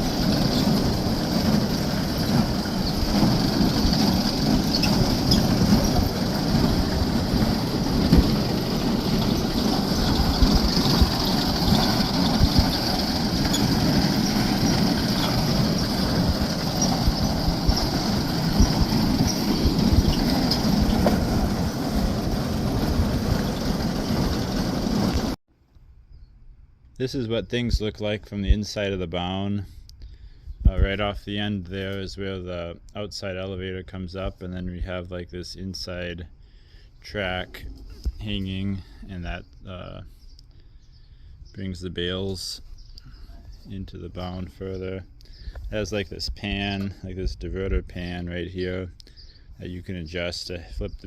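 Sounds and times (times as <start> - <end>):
farm machinery rattling: 0.0 - 25.4.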